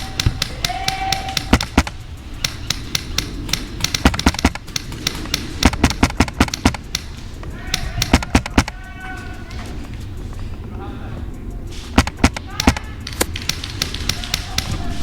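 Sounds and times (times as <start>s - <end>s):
airsoft guns firing: 0.0s - 8.8s, 11.9s - 15.0s.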